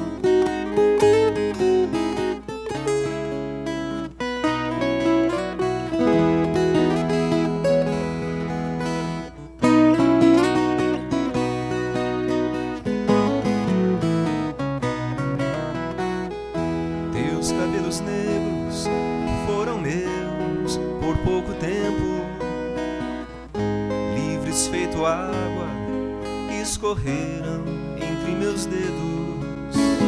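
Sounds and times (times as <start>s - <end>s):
folk guitar plucking and strumming: 0.0s - 30.0s.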